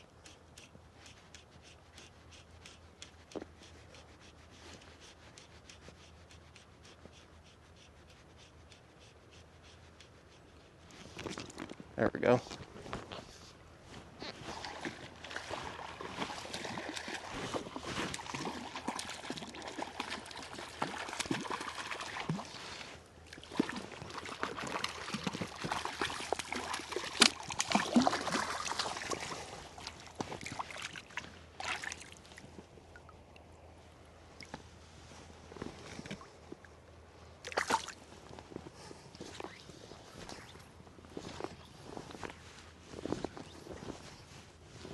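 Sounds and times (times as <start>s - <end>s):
fish splashing in water: 14.4s - 32.4s, 37.5s - 38.0s.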